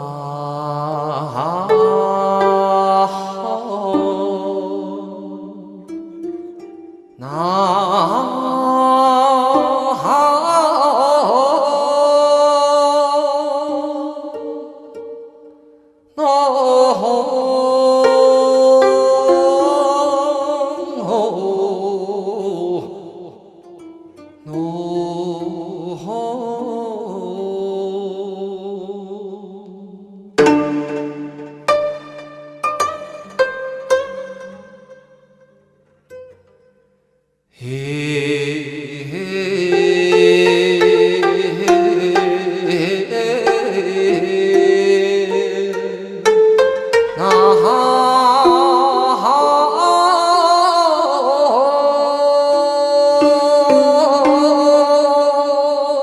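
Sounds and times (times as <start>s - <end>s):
person singing with vibrato: 0.0s - 36.5s, 37.5s - 56.0s
plucked zither notes: 1.5s - 5.1s, 17.9s - 21.5s, 30.4s - 36.9s, 39.7s - 50.2s, 52.9s - 55.4s.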